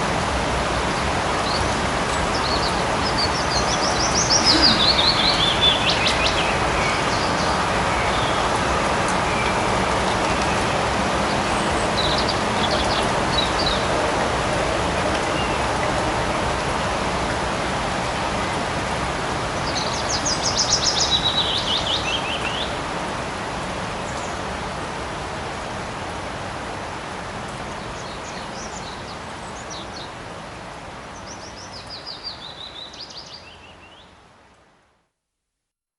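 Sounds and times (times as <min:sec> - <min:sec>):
light rain falling: 0:00.0 - 0:35.3
birds chirping in trills: 0:02.4 - 0:08.4.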